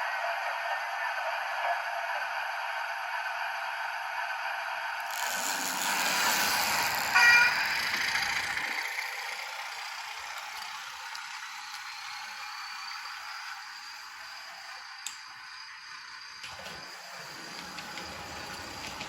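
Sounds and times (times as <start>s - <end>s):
model train rumble: 0.0s - 19.0s
diesel engine sound from small speaker: 5.0s - 13.7s
short high horn tone: 7.1s - 8.0s.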